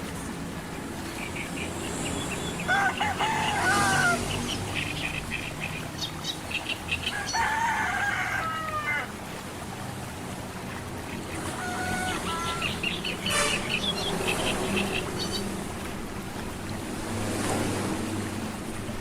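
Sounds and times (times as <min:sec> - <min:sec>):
rooster crowing: 0:02.6 - 0:04.3, 0:07.1 - 0:09.1, 0:11.5 - 0:12.7.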